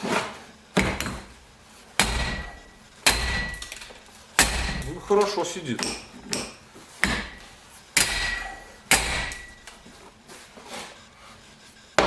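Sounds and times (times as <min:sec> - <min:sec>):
hammer striking metal: 0:02.0 - 0:09.8.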